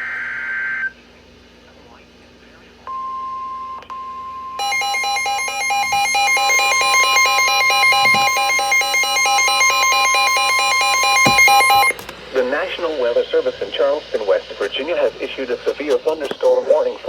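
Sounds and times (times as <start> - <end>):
steady high warning tone: 0.0 - 1.2, 2.8 - 17.0
electronic alarm beeping fast: 4.0 - 12.0.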